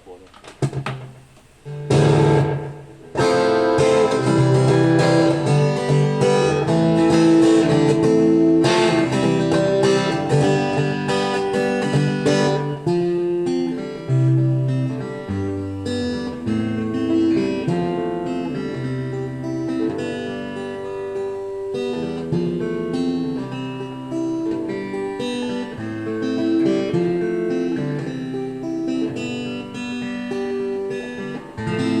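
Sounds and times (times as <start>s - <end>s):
acoustic guitar melody: 0.0s - 32.0s.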